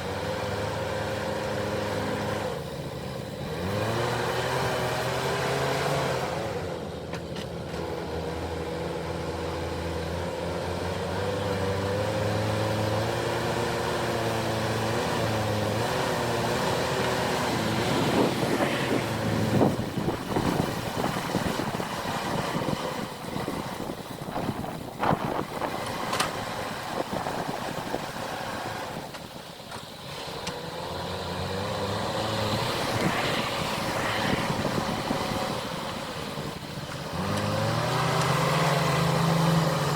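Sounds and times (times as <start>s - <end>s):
backhoe diesel engine working: 0.0s - 39.9s.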